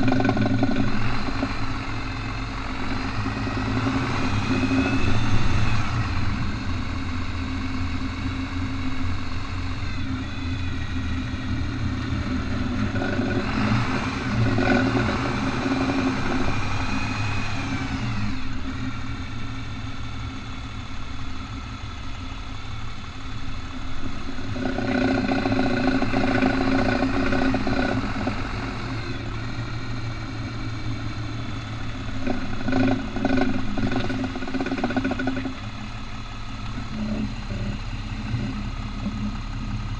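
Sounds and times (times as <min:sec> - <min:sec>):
rapid ratcheting clatter: 0:00.0 - 0:39.9
vehicle engine running: 0:00.0 - 0:39.9.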